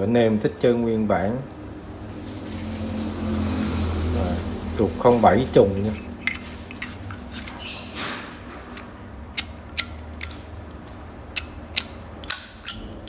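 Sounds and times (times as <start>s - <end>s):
lighter scraping: 8.7s - 12.7s
metal lighter clicking and clinking: 8.8s - 13.0s.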